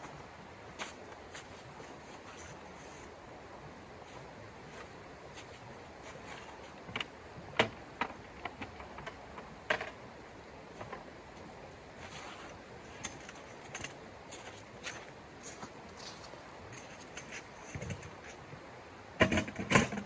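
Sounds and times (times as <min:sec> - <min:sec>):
steady low hiss: 0:00.0 - 0:20.0.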